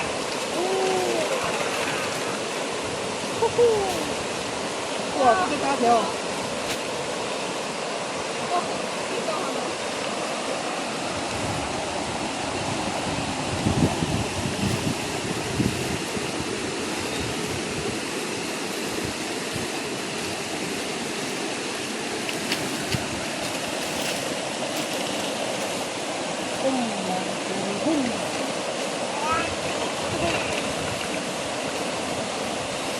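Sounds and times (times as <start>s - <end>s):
river water rushing: 0.0s - 32.9s.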